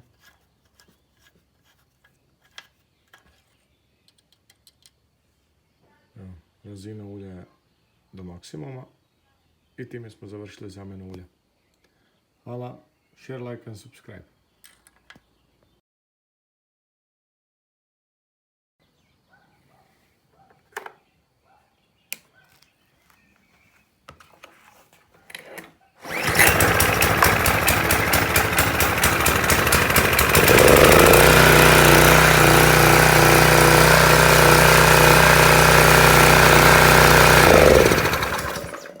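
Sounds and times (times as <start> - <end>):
pressure washer engine running: 26.0 - 39.0.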